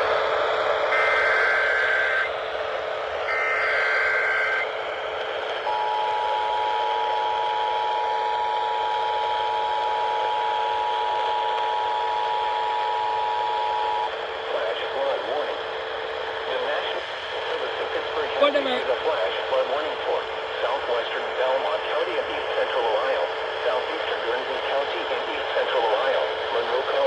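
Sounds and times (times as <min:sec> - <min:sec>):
radio hiss: 0:16.5 - 0:27.0.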